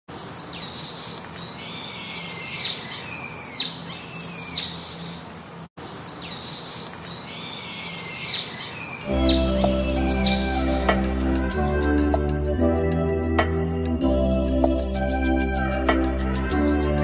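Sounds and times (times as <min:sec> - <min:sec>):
birds whistling: 0:00.1 - 0:05.2, 0:05.8 - 0:11.4.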